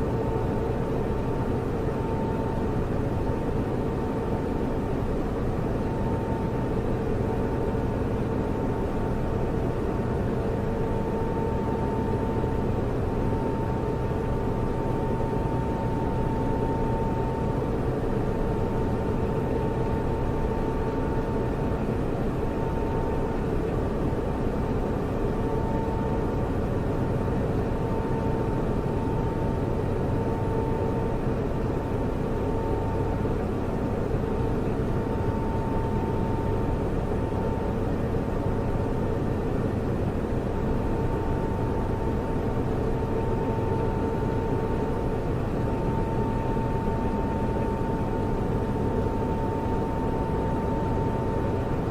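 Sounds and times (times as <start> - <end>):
constant electrical hum: 0.0 - 51.9
server cooling fans whirring: 0.0 - 51.9.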